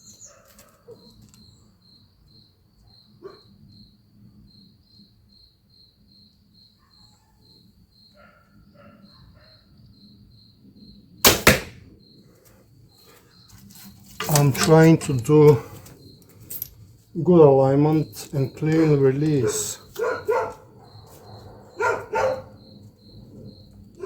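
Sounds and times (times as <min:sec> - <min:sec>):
crickets chirping: 0:00.0 - 0:24.0
faint dog barking: 0:00.2 - 0:01.2, 0:03.2 - 0:03.6, 0:06.8 - 0:07.5, 0:08.1 - 0:09.8, 0:18.7 - 0:22.6
arrow striking target: 0:11.3 - 0:11.8.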